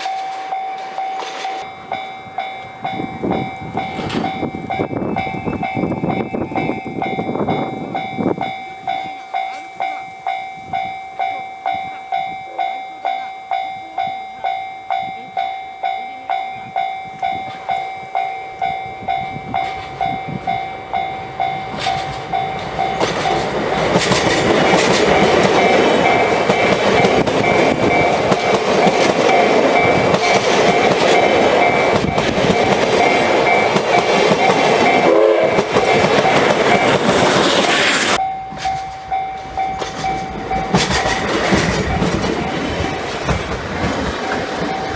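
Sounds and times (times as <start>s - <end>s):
train wheels clattering on rails: 0.0s - 13.4s, 14.0s - 44.9s
diesel locomotive engine rumble: 0.0s - 44.9s
level crossing warning bell: 0.0s - 44.9s.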